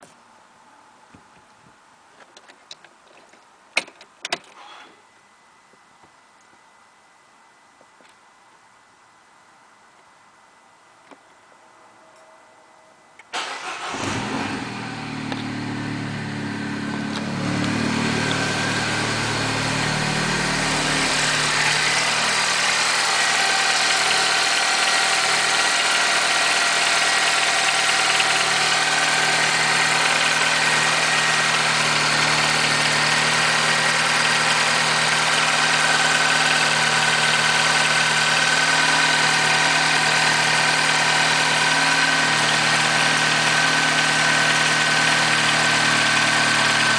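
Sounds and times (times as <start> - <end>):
car engine starting and idling: 13.3 - 46.9
engine rattle: 13.4 - 46.9.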